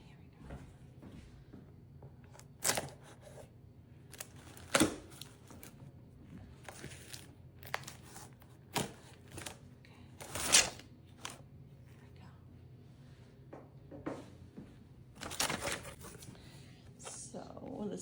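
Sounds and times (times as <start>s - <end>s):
cardboard and tape ripping: 10.2s - 11.4s.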